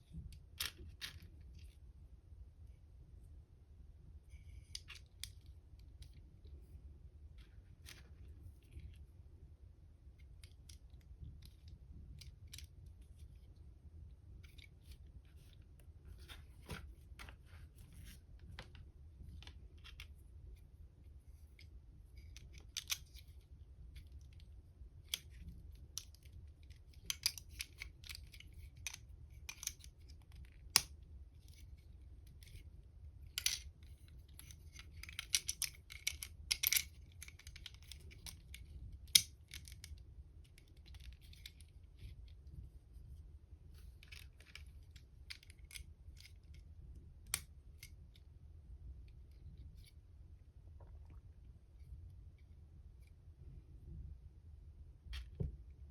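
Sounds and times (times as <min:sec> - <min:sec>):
plastic bricks clicking and rattling: 0:34.4 - 0:39.9.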